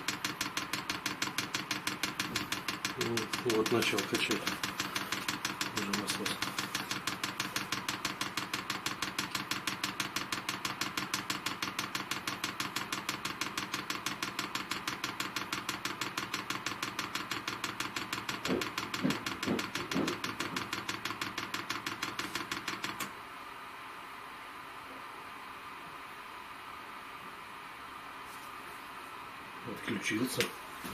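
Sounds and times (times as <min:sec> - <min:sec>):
fuel pump ticking rapidly: 0:00.0 - 0:23.1.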